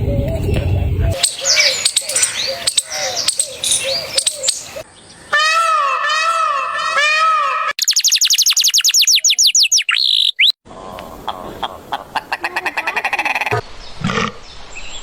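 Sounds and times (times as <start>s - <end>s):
birds chirping: 0.0s - 7.0s, 12.4s - 15.0s
warbling bird call: 1.1s - 10.5s.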